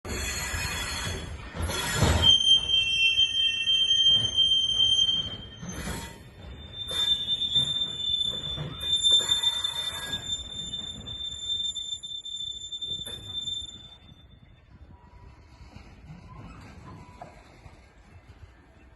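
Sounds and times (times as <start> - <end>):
high-pitched wheel squeals on rails: 0.1 - 17.8
wagons clanking and knocking: 3.7 - 12.0.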